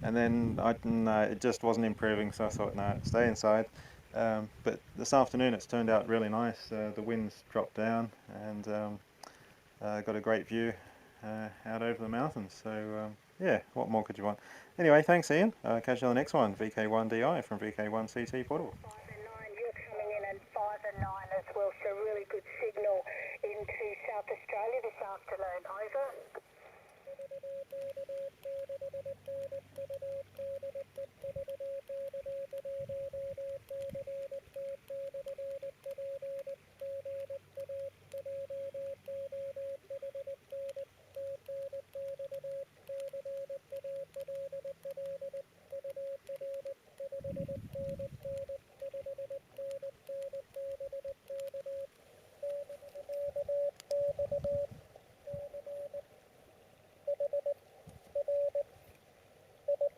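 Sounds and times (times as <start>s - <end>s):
morse code tone: 27.1s - 54.7s, 55.3s - 56.0s, 57.1s - 57.6s, 58.2s - 58.7s, 59.7s - 59.9s.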